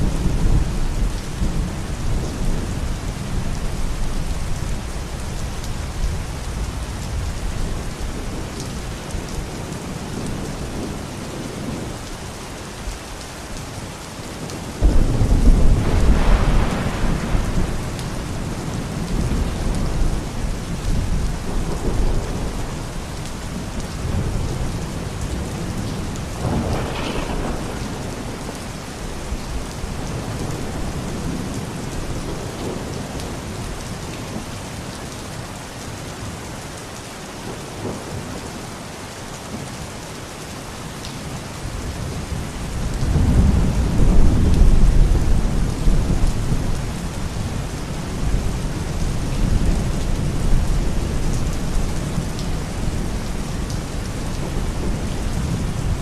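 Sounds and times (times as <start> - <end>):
steady rain: 0.0 - 56.0
thunder rumbling: 14.5 - 33.5, 41.7 - 56.0.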